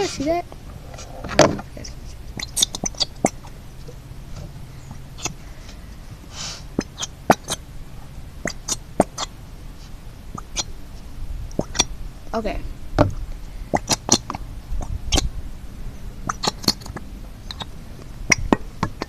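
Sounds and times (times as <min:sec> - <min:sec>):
brief hiss: 0:06.3 - 0:06.6.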